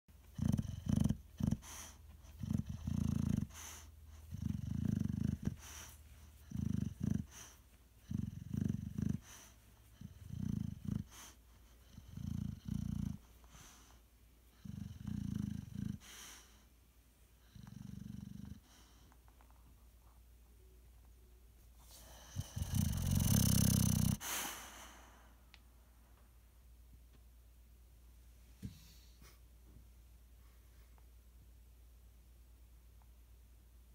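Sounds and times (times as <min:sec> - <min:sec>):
dog snoring: 0:00.2 - 0:13.9, 0:14.6 - 0:16.4, 0:17.4 - 0:19.0, 0:21.9 - 0:24.2.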